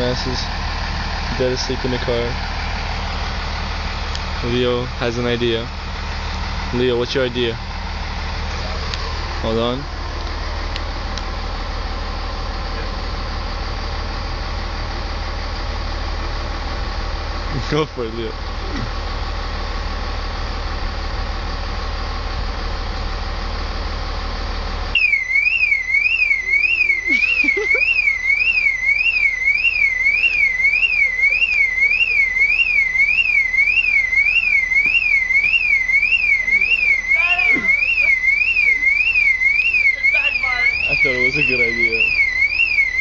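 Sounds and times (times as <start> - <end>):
car alarm siren warbling: 25.0 - 43.0.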